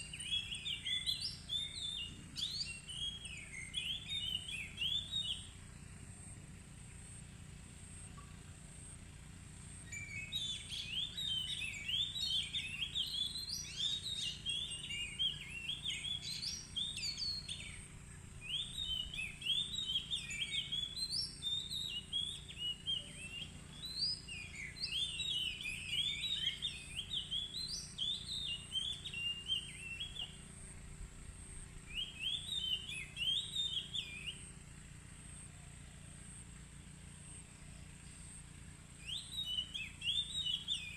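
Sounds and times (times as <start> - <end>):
bird singing whistled phrases: 0.0 - 5.5, 9.9 - 30.5, 31.9 - 34.6, 39.0 - 40.9.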